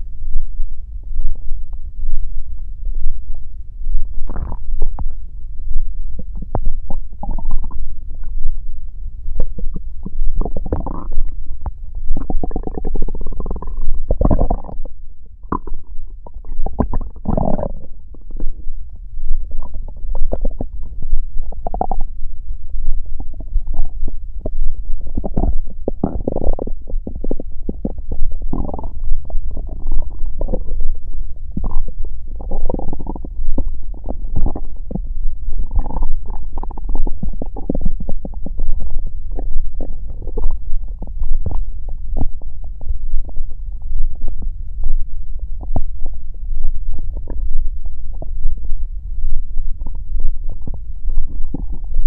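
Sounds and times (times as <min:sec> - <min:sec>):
stomach growling: 0:01.2 - 0:52.0.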